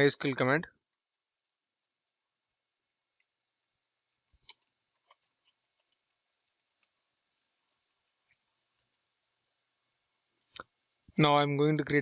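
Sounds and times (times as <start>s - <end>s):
computer keys clicking: 0.8s - 2.6s, 4.4s - 9.0s.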